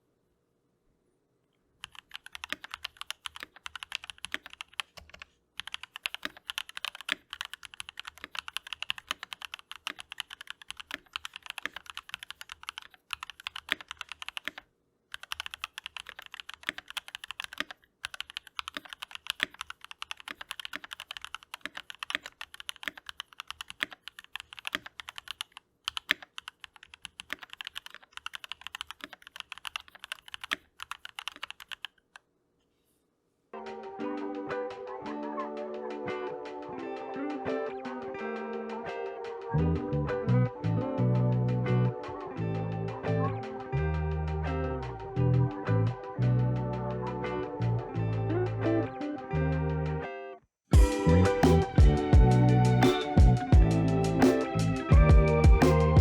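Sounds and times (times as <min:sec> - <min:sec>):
mechanical keyboard typing: 0:01.8 - 0:32.2.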